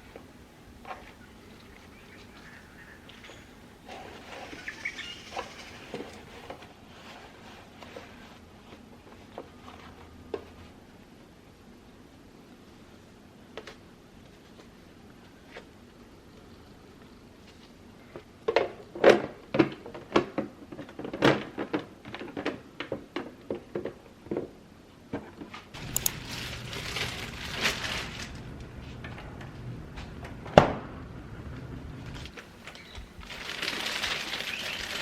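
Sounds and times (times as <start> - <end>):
steady hiss: 25.8 - 29.9
low hum: 25.8 - 32.3.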